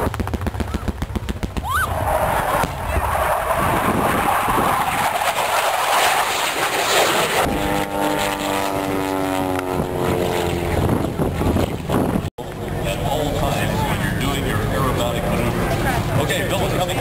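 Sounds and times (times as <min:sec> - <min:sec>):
propeller airplane flying past: 0:00.0 - 0:17.0
rushing noise: 0:01.6 - 0:07.6.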